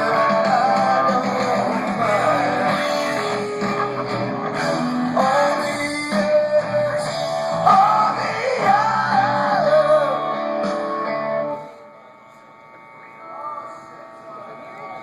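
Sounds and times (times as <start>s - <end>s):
person singing: 0.0s - 11.0s
rock band electric guitars: 0.0s - 12.0s.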